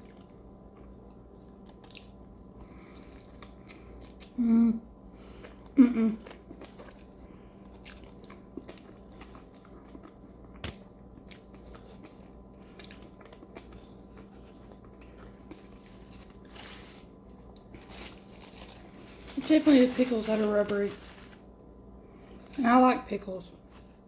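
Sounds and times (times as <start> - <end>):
person chewing: 0.0 - 4.5, 5.1 - 19.4.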